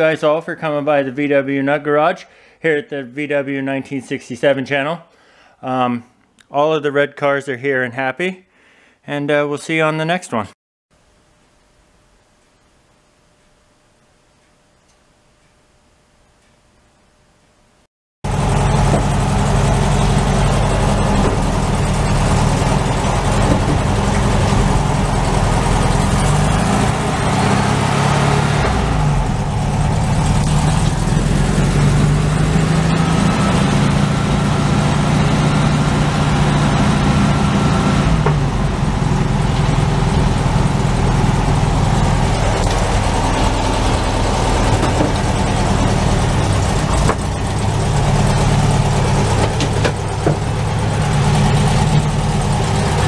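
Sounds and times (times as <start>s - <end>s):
car engine running: 18.2s - 53.0s
road noise: 18.2s - 53.0s.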